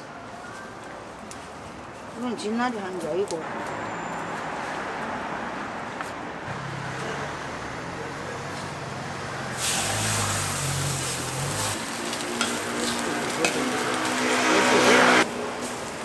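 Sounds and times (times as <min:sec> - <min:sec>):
vehicle engine humming: 0:06.4 - 0:16.0
food sizzling in hot oil: 0:09.5 - 0:16.0.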